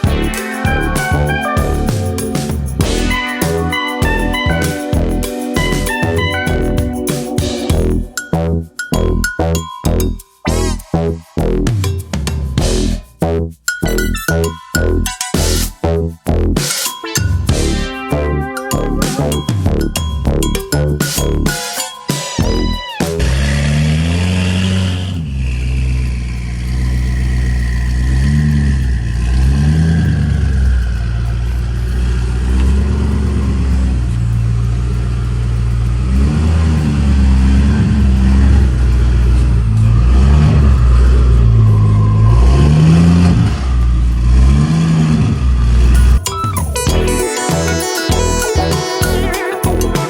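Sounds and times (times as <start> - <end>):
car engine revving: 22.4 - 49.9.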